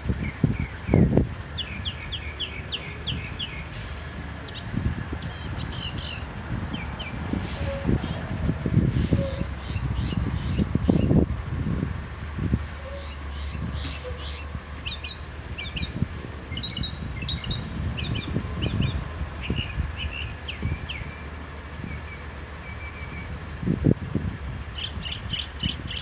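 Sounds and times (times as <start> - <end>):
low rumbling noise: 0.0 - 26.0
mockingbird singing: 0.1 - 3.7, 4.4 - 7.2, 9.2 - 11.2, 12.8 - 23.4, 24.7 - 26.0.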